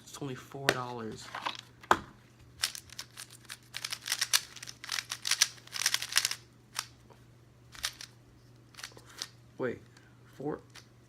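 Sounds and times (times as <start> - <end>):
speed cube plastic clicks: 2.6 - 6.9, 8.8 - 9.3.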